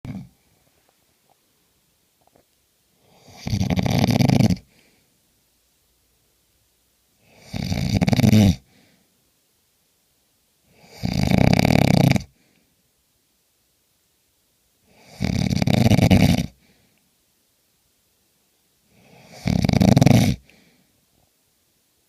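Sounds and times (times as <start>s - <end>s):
person snoring: 0.0s - 0.5s, 3.0s - 4.8s, 7.2s - 8.7s, 10.7s - 12.4s, 14.9s - 16.6s, 18.9s - 20.6s.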